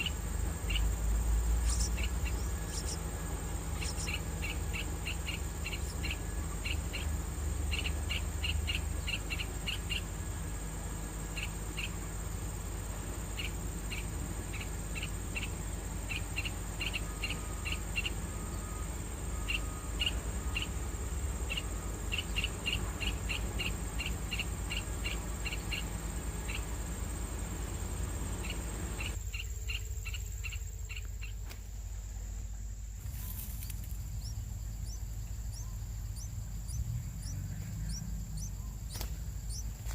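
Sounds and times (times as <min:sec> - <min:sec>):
high insect whine: 0:00.0 - 0:39.9
insects chirping: 0:00.0 - 0:39.9
low background rumble: 0:00.0 - 0:39.9.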